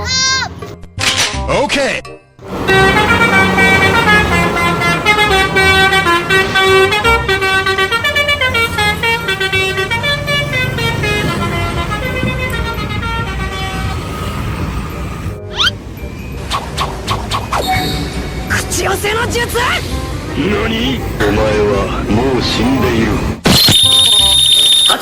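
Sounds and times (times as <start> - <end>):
musical bus air horn melody: 2.4 - 15.9
bus engine rumble: 2.4 - 23.4.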